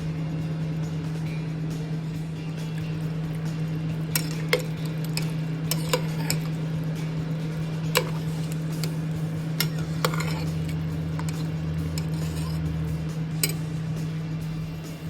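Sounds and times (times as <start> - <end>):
steady low hum: 0.0 - 15.0
kitchen utensils clinking: 4.0 - 12.8, 13.4 - 13.8.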